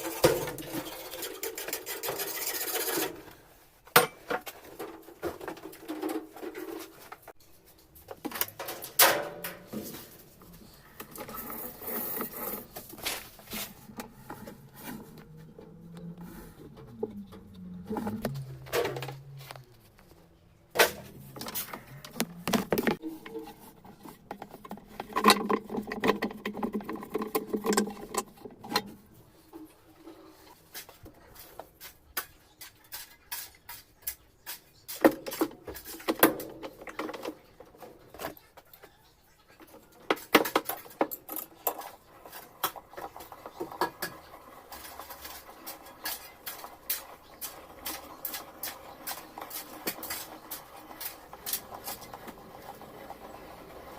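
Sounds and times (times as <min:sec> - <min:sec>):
squeaky scraping: 0:10.0 - 0:20.2.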